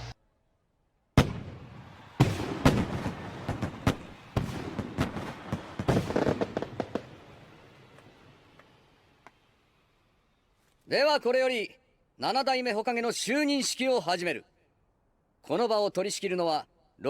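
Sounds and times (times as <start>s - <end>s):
fireworks bangs: 1.2s - 9.6s.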